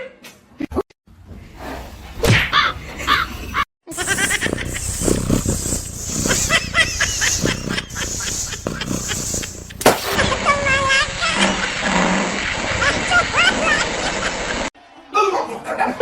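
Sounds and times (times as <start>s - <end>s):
drawn-out animal calls: 3.9s - 10.1s.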